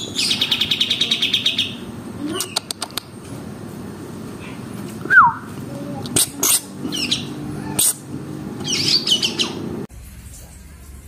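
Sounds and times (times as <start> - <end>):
songbird trill: 6.4 - 7.8, 8.6 - 9.7.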